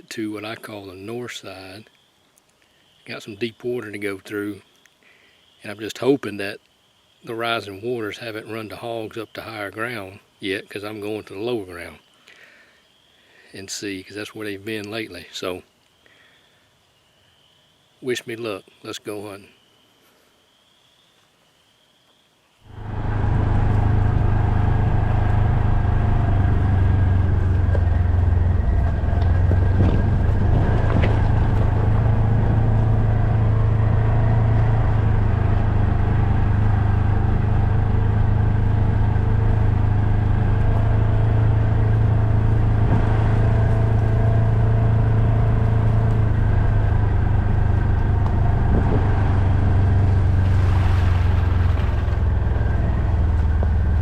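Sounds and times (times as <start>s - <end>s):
vehicle engine droning: 22.7s - 54.0s.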